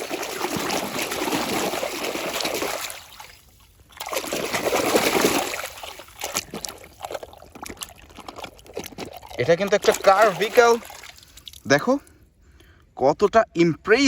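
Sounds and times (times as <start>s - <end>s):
water splashing and trickling: 0.0s - 12.3s
water dripping: 5.2s - 12.8s.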